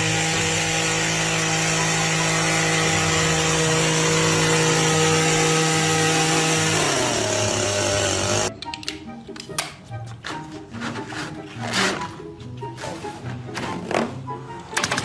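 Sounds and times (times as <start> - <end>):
power tool cutting: 0.0 - 8.5.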